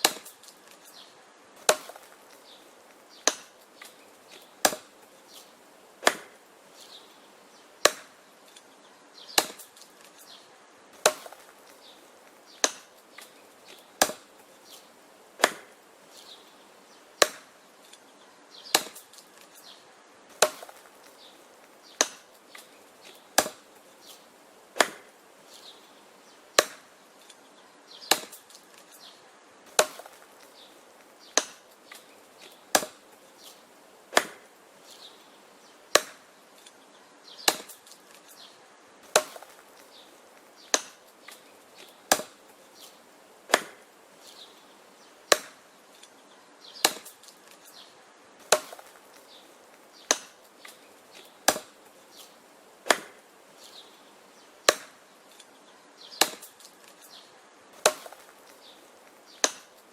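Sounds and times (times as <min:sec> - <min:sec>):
wood chopping strikes: 0:00.0 - 0:01.0, 0:01.6 - 0:06.4, 0:07.8 - 0:08.7, 0:09.3 - 0:10.3, 0:11.0 - 0:16.3, 0:17.2 - 0:18.0, 0:18.7 - 0:25.8, 0:26.5 - 0:27.4, 0:28.0 - 0:34.5, 0:35.9 - 0:36.8, 0:37.4 - 0:44.5, 0:45.3 - 0:46.2, 0:46.8 - 0:47.8, 0:48.4 - 0:53.8, 0:54.6 - 0:55.5, 0:56.1 - 0:57.2, 0:57.8 - 0:59.8.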